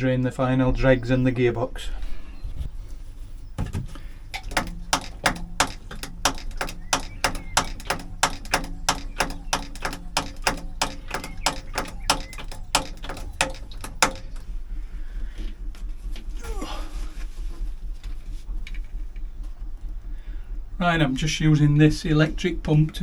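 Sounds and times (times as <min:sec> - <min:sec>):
hand pump clicking: 0:04.3 - 0:14.6.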